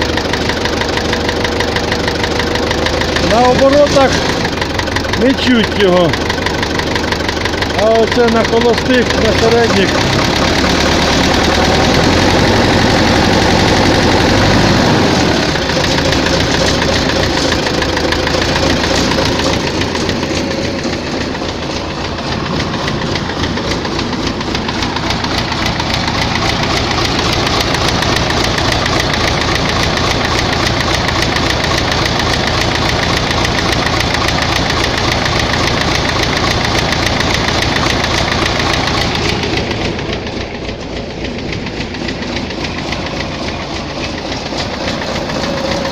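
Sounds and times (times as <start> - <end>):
diesel engine knocking: 0.0 - 45.9.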